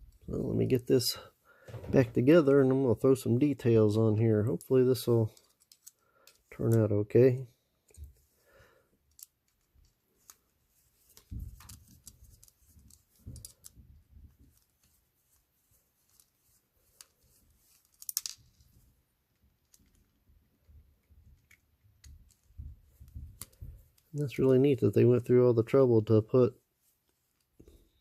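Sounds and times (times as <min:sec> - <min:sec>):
small metal parts clicking: 0:05.3 - 0:06.4, 0:09.0 - 0:09.9, 0:17.8 - 0:18.6.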